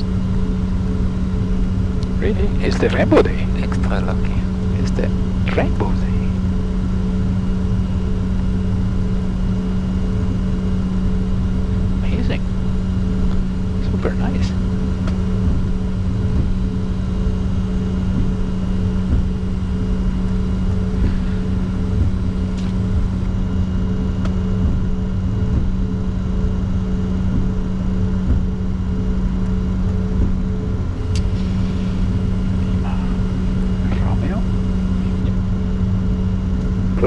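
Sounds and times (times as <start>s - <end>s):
low uneven rumble: 0.0s - 23.3s, 30.1s - 35.3s
aircraft cockpit hum: 0.0s - 23.4s, 28.1s - 35.4s.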